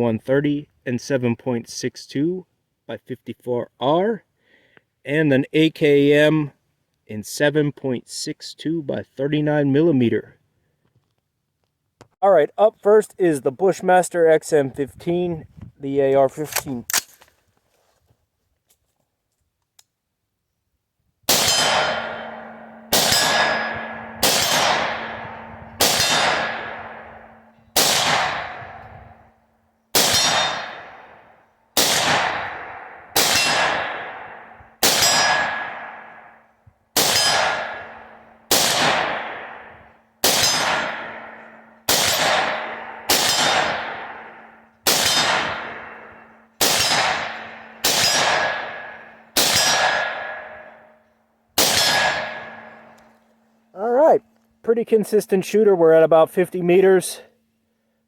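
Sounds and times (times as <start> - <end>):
rifle shots: 21.3 - 28.9, 29.9 - 36.4, 37.0 - 50.9, 51.6 - 53.0
metallic clang of steel gong: 21.5 - 27.7.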